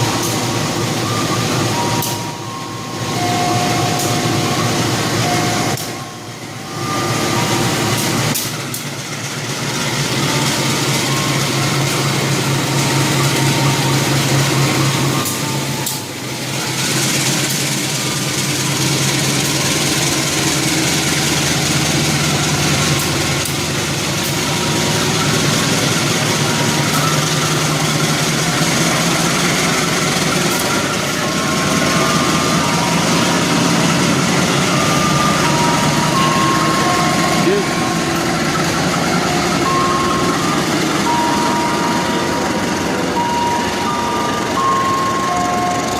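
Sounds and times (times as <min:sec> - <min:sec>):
diesel locomotive engine drone: 0:00.0 - 0:45.9.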